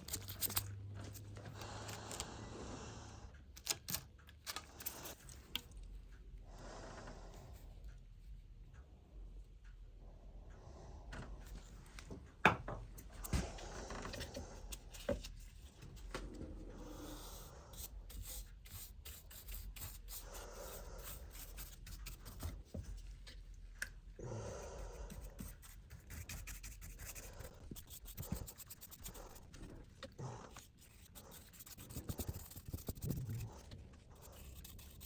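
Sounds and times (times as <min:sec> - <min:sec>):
rubbing and scraping on wood: 0:25.1 - 0:35.0.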